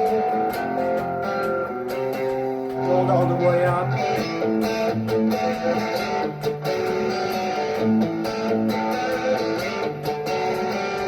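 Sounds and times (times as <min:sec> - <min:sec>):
distorted electric guitar riff: 0:00.0 - 0:11.0.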